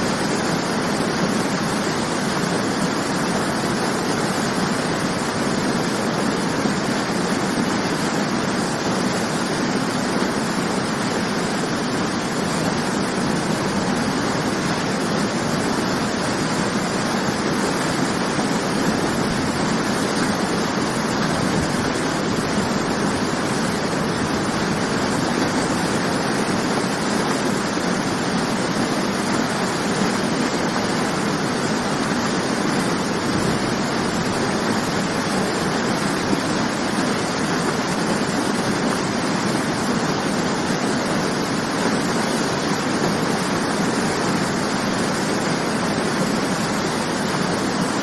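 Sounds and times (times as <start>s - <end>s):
waterfall rushing: 0.0s - 48.0s.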